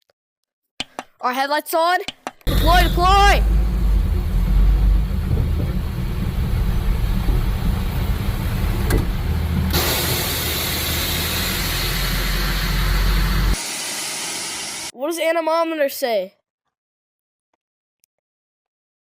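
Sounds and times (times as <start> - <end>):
strong wind buffeting: 2.5 - 13.5
heavy low rumble: 2.5 - 13.6.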